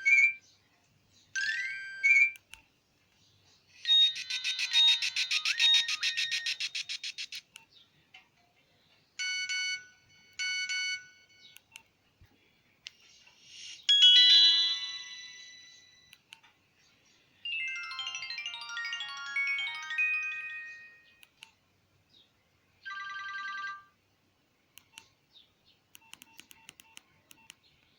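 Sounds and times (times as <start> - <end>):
melodic phone notes: 1.4 - 2.4, 3.8 - 7.3, 13.5 - 16.2, 17.4 - 21.3
phone alert beeps: 9.2 - 11.6, 13.6 - 16.1
bright chime: 13.6 - 16.1, 17.4 - 21.2.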